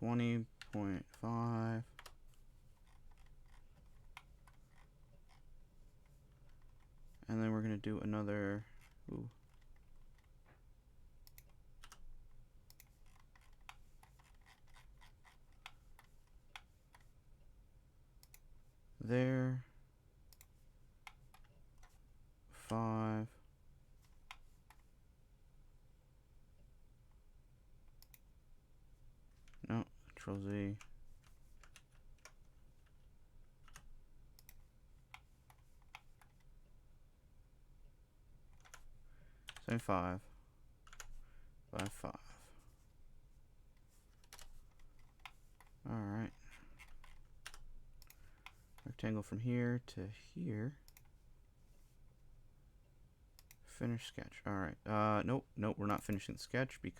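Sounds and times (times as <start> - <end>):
keyboard and mouse clicks: 1.9 - 7.2, 8.7 - 10.6, 11.2 - 17.1, 18.2 - 18.5, 20.3 - 22.0, 27.9 - 28.3, 33.6 - 36.6, 38.5 - 38.9, 41.8 - 42.0, 43.8 - 48.9, 50.8 - 51.2
keyboard keys clicking: 11.2 - 12.1, 38.5 - 38.9, 40.8 - 41.1, 41.8 - 42.0, 44.2 - 45.8.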